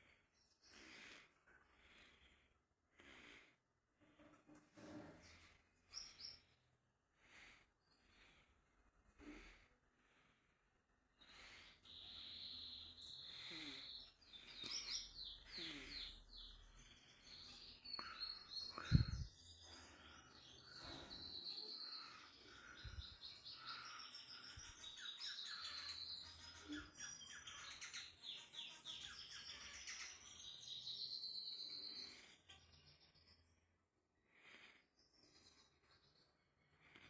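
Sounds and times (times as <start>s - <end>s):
bird chirping and chattering: 11.9s - 33.4s.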